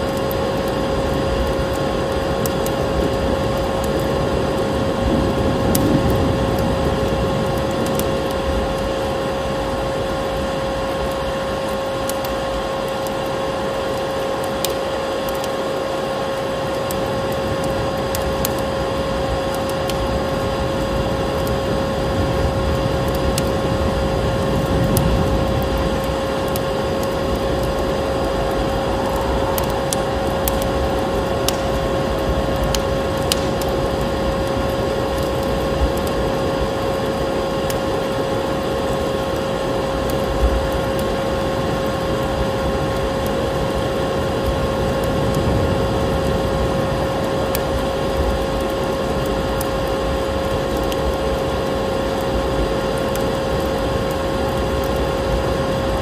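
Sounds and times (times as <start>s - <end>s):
crackling wood fire: 0.0s - 56.0s
vacuum cleaner motor whining: 21.5s - 38.0s.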